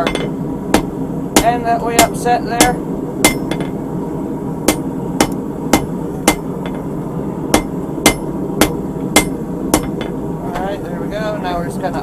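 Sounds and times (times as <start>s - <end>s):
hammer striking steel on anvil: 0.0s - 3.8s, 4.7s - 6.9s, 7.5s - 10.2s.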